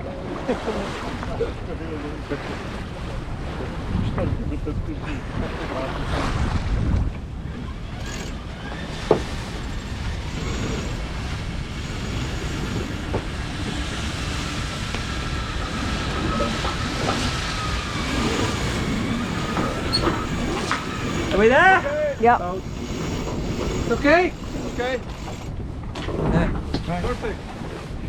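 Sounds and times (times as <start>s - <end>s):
wind and water rushing: 0.0s - 26.2s
electric motor whine: 7.4s - 25.6s.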